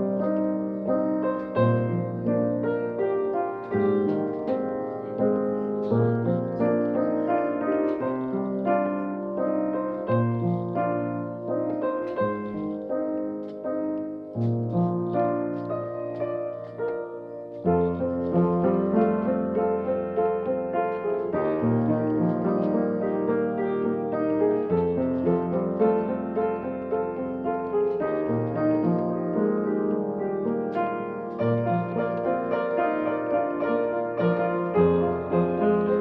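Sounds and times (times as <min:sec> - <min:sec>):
slow piano piece: 0:00.0 - 0:36.0.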